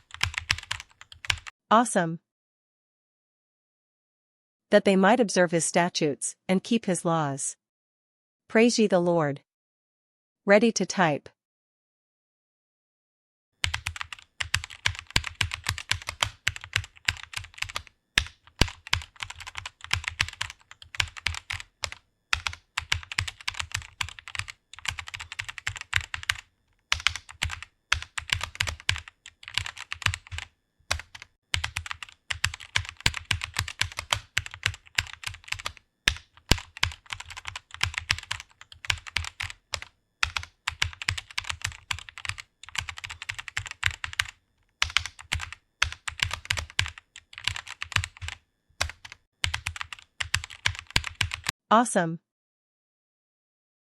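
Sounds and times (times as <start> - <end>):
fast typing on keyboard: 0.0 - 1.5, 13.6 - 51.5.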